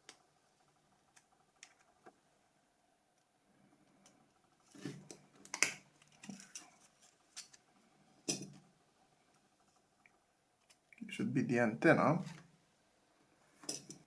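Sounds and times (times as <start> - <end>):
tools and parts clicking and scraping: 4.7 - 7.6, 13.6 - 14.0.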